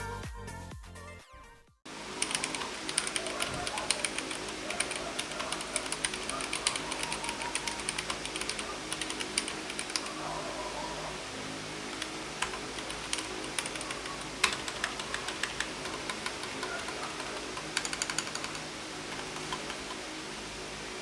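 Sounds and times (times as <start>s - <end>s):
mechanical keyboard key presses: 2.2s - 10.2s, 12.0s - 20.0s.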